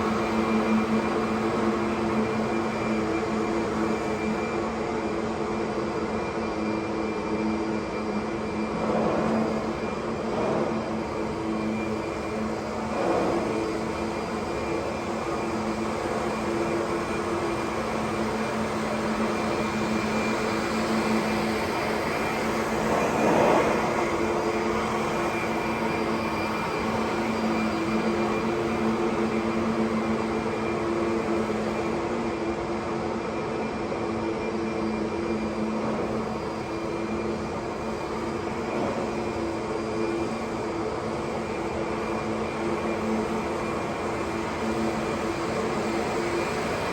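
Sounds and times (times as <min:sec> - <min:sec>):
vacuum cleaner running: 0:19.1 - 0:30.2.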